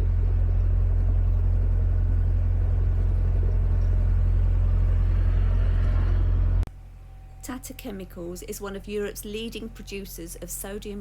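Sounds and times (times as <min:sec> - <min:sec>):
diesel engine rumble: 0:00.0 - 0:06.7.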